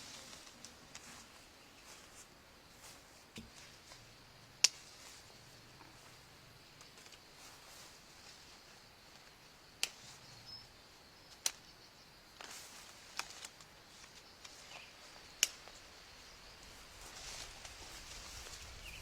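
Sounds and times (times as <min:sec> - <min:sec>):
faint clicks: 0:04.6 - 0:04.9, 0:09.2 - 0:10.2, 0:11.3 - 0:11.7
sharp snaps: 0:04.6 - 0:05.0, 0:09.7 - 0:10.3, 0:11.3 - 0:11.8, 0:15.4 - 0:15.8.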